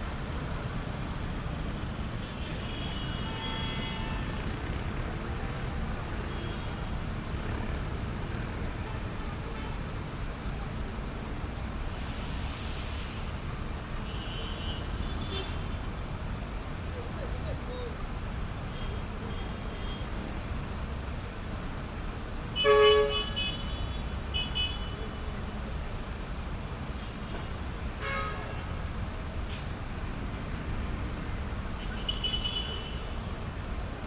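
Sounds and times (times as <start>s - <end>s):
traffic rumble: 0.0s - 34.0s
short hiss: 11.9s - 13.4s.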